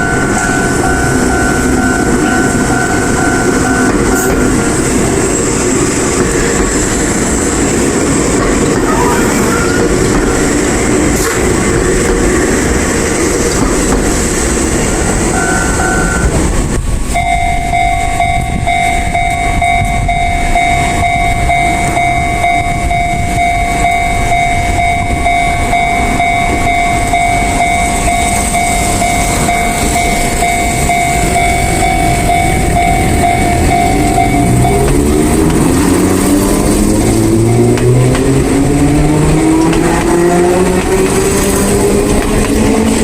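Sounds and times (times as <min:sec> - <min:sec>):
steady electronic tone: 0:00.0 - 0:06.2, 0:17.1 - 0:39.6
train rumbling past: 0:00.0 - 0:43.0.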